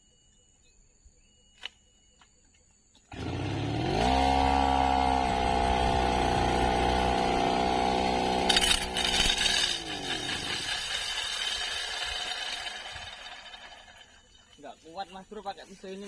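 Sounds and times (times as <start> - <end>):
brush cutter engine revving: 3.1 - 14.6.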